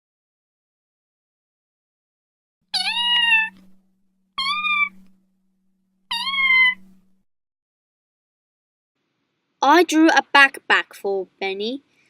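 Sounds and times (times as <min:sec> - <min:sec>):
kitten meowing: 0:02.7 - 0:03.8, 0:04.4 - 0:05.2, 0:06.1 - 0:07.0.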